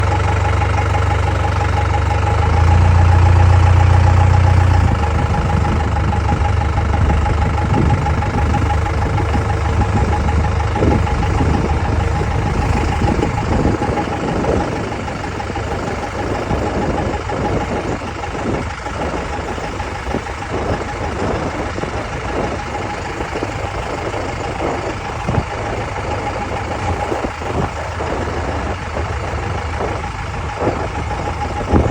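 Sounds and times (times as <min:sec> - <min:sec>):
diesel engine idling: 0:00.0 - 0:31.9
engine knocking: 0:00.0 - 0:31.9
steady whine: 0:00.0 - 0:31.9.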